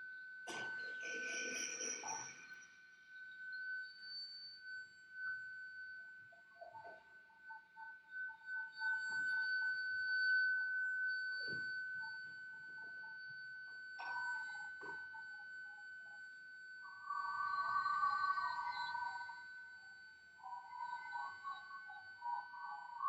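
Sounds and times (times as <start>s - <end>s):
high whistle-like tone: 0.5s - 23.0s.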